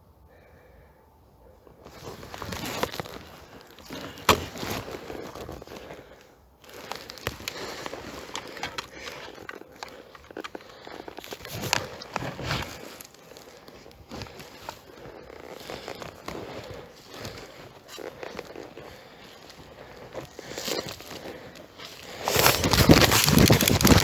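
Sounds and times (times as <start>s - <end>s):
footsteps crunching through dry leaves: 6.6s - 24.0s
twig cracking: 22.1s - 24.0s.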